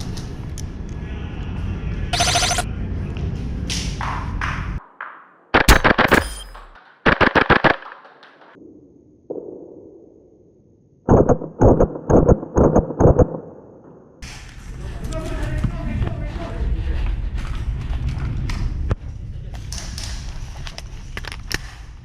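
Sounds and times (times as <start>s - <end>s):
airsoft rifle firing bursts: 5.6s - 8.6s.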